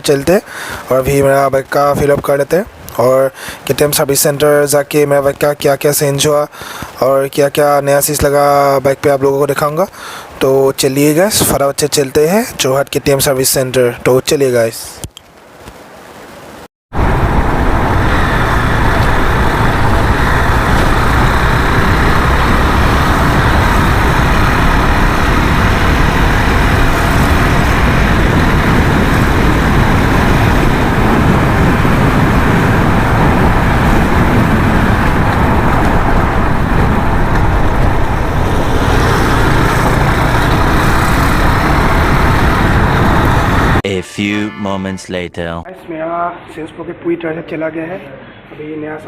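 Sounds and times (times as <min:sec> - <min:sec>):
wind and road noise: 0:00.0 - 0:14.2, 0:14.8 - 0:43.8
motorcycle engine running: 0:17.9 - 0:43.8.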